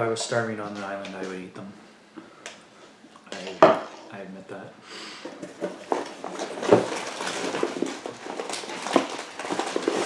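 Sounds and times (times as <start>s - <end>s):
snack packaging crackling: 5.4s - 10.0s.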